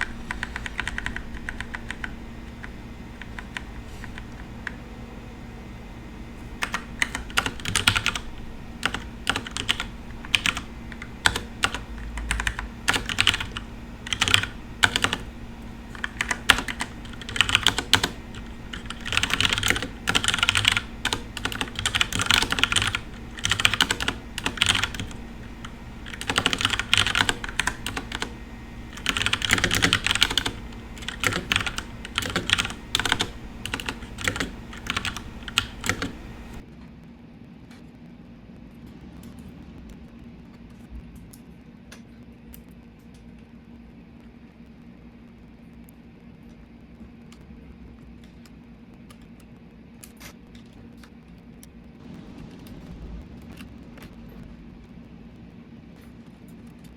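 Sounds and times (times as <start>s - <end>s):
fast typing on mechanical keyboard: 0.0s - 36.6s.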